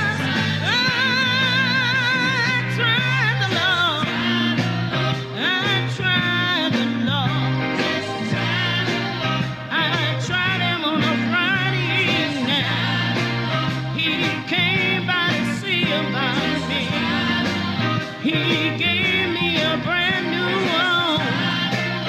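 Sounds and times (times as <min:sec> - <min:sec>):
gospel band playing: 0:00.0 - 0:22.0.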